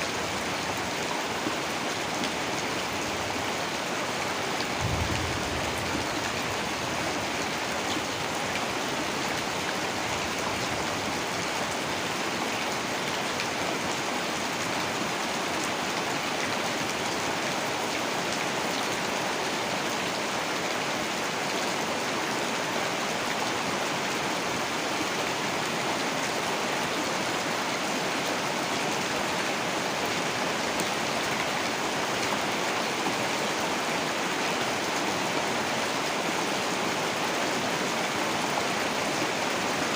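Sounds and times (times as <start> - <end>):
heavy rain hissing: 0.0 - 13.3.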